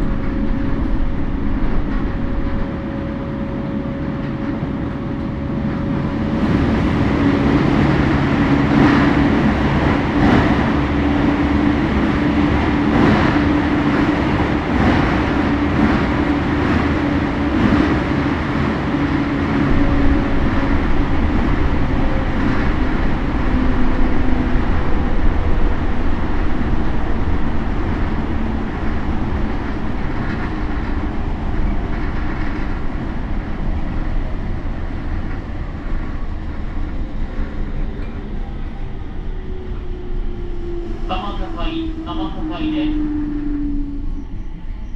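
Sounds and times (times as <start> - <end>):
rail joint clicks: 0.0 - 44.9
train wheel and rail noise: 0.0 - 44.9.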